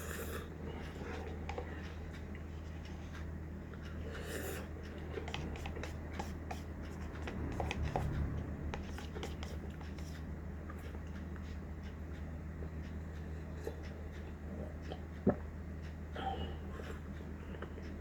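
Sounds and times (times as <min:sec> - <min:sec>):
steady low hum: 0:00.0 - 0:18.0
clicks and rubbing handling food: 0:00.7 - 0:15.1.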